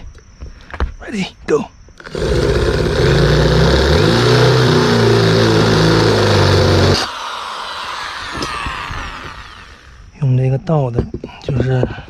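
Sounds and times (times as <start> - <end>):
electric drill boring metal: 2.0 - 10.0.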